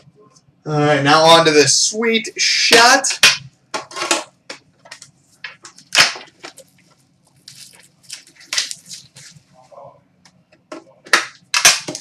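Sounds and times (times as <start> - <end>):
packaging being torn open: 7.3 - 9.2.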